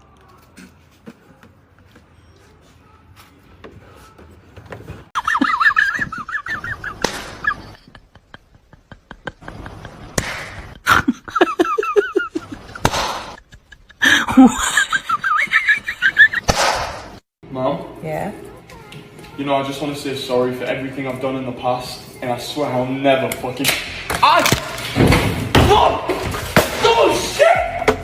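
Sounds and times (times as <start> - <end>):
high-pitched laughter: 5.2 - 10.1.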